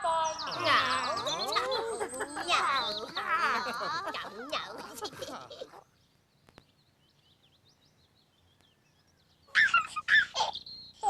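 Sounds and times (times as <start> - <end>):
faint birds chirping: 0.0 - 11.0
squeaky high cries: 9.5 - 10.6.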